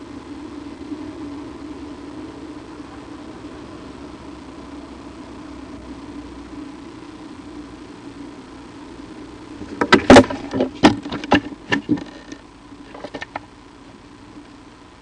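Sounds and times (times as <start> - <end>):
low engine-like hum: 0.0 - 9.8
sharp knocks and clatters: 9.6 - 13.4.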